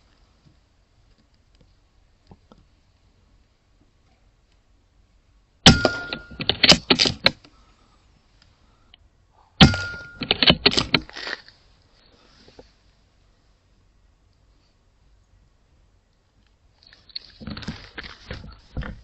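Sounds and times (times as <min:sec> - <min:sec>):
air rifle shots: 0:05.6 - 0:07.3
rapid clicks and knocks: 0:05.7 - 0:07.4, 0:09.6 - 0:11.1.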